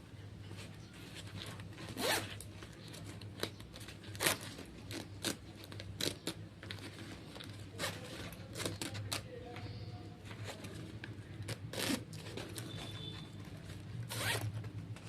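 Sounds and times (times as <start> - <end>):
packaging being cut or torn: 3.4 - 6.8, 11.4 - 13.0.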